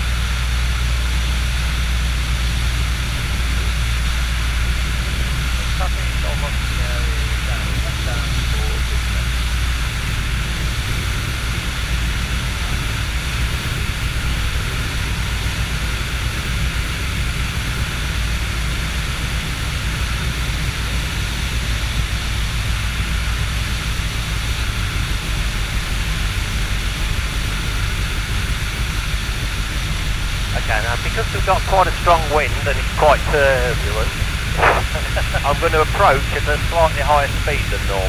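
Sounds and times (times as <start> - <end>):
aircraft engine drone: 0.0 - 38.0
air rushing: 34.0 - 35.4.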